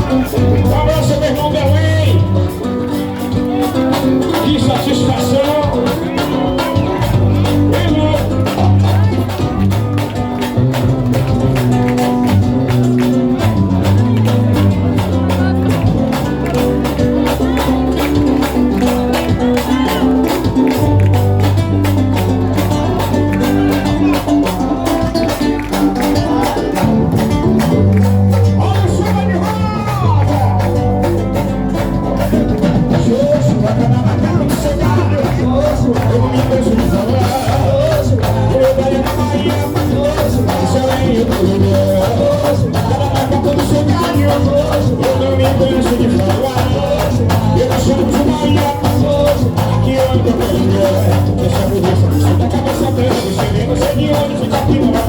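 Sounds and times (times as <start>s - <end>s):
live band playing loud music: 0.0s - 55.0s
person singing: 0.0s - 55.0s
sustained bass: 0.0s - 55.0s.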